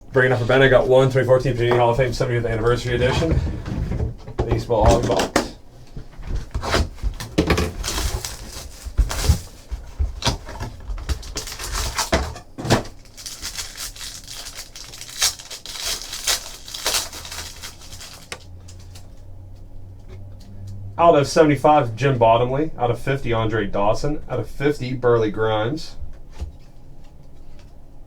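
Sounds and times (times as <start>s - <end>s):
plastic wrap and foil ripping: 7.6s - 19.1s.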